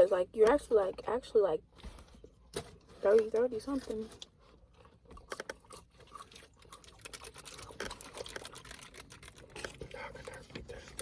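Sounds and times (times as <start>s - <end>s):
small crunches and clicks: 2.5s - 11.0s
person chewing food: 4.1s - 11.0s.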